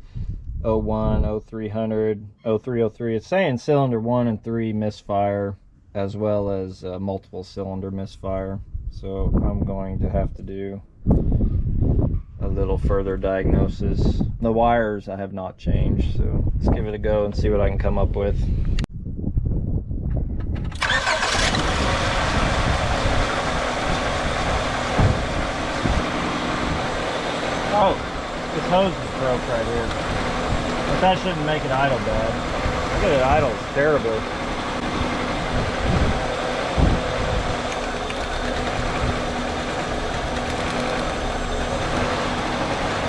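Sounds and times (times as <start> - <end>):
car engine idling roughly: 21.0 - 43.0
low thump: 25.0 - 25.3.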